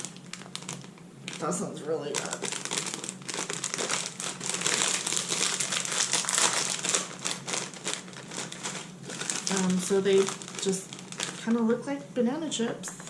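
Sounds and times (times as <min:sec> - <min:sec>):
plastic snack bag crinkling: 0:00.0 - 0:11.7.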